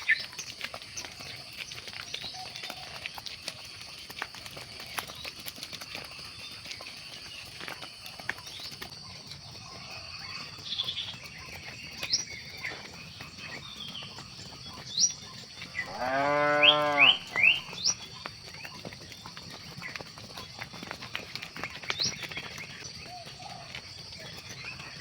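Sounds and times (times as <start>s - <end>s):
cow mooing: 15.8s - 17.6s.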